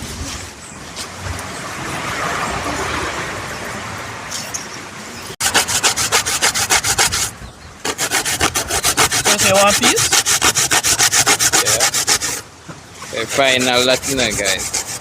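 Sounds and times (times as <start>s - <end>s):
coconut grating rasps: 5.4s - 12.4s, 13.1s - 15.0s.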